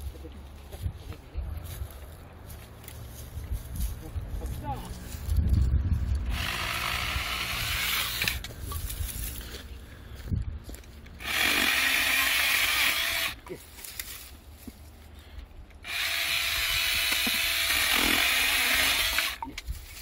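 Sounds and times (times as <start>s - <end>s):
electric saw cutting wood: 6.2s - 8.5s, 11.2s - 13.4s, 15.8s - 19.4s.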